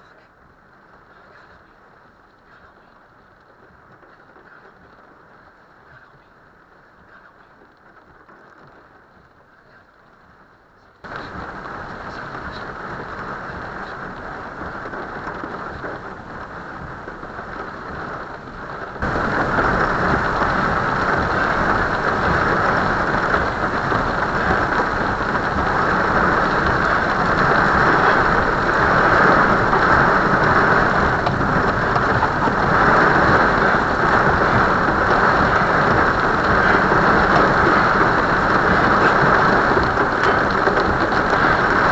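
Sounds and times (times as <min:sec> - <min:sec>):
heavy rain pouring: 0:00.0 - 0:41.9.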